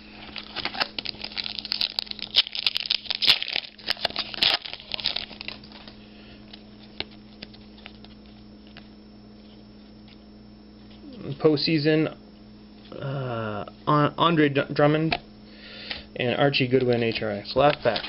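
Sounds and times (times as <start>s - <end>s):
wrapper crinkling and tearing: 0.3s - 6.0s.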